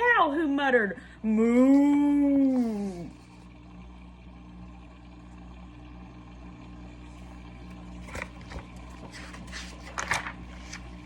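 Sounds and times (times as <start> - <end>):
low electrical hum: 0.0 - 11.0
book pages rustling: 7.9 - 11.0.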